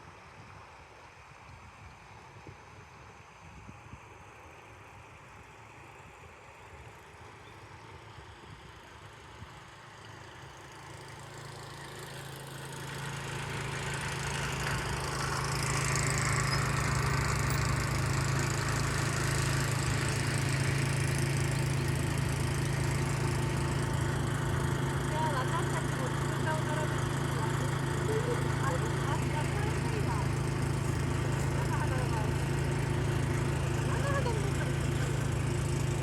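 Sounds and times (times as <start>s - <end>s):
engine humming: 10.6s - 36.0s.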